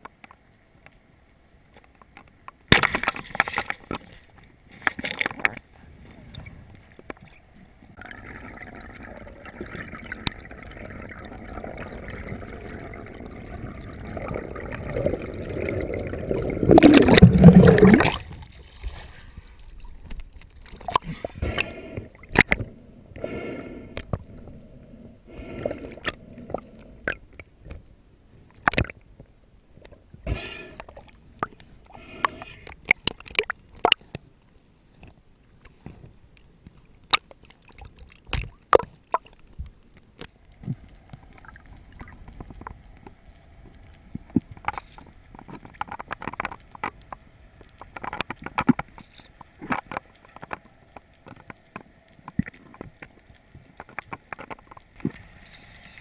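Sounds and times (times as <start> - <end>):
underwater gurgling rush: 7.9 - 24.6.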